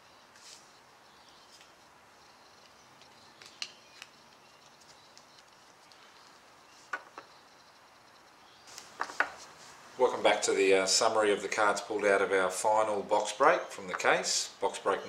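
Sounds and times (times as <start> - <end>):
cards clicking and tapping: 2.6 - 6.0.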